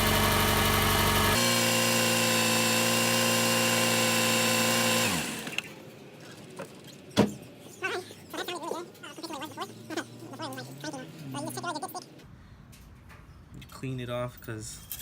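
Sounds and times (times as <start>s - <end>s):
car engine idling and spinning down: 0.0s - 5.8s.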